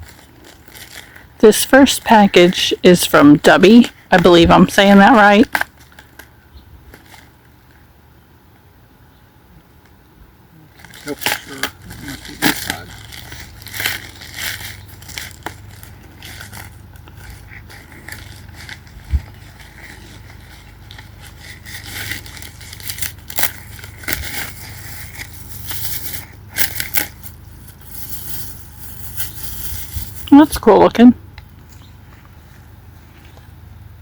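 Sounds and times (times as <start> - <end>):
packaging crinkling and tearing: 0.0 - 1.6, 5.5 - 7.5, 10.7 - 30.4.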